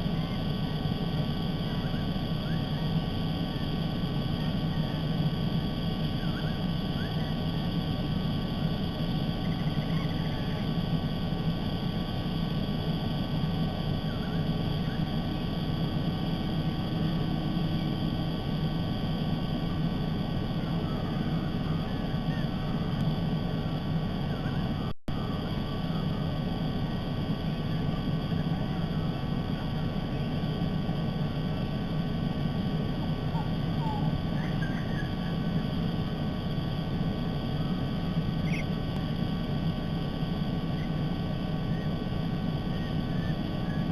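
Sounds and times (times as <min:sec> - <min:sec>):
low outdoor rumble: 0:00.0 - 0:43.9
faint bird chirps: 0:06.1 - 0:07.5, 0:09.3 - 0:10.7, 0:24.2 - 0:26.2, 0:33.3 - 0:35.8, 0:38.4 - 0:38.8, 0:41.6 - 0:42.0, 0:42.6 - 0:43.9.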